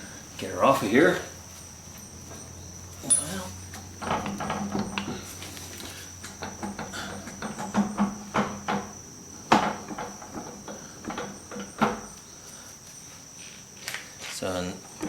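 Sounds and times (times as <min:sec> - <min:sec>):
metal clunks knocks and scrapes: 0:02.2 - 0:12.2.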